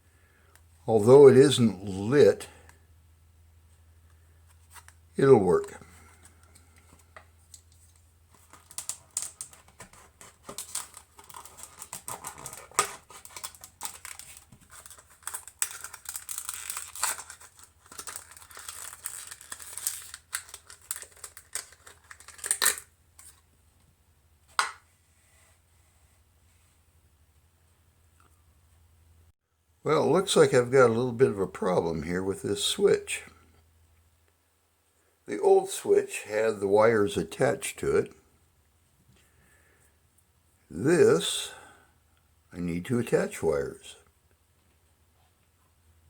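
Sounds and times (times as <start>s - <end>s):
small parts rustling and clicking: 5.8s - 23.5s.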